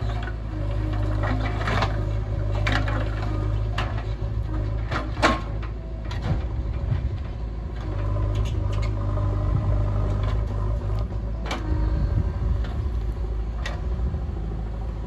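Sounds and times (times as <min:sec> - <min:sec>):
diesel engine rumbling: 0:00.0 - 0:15.0.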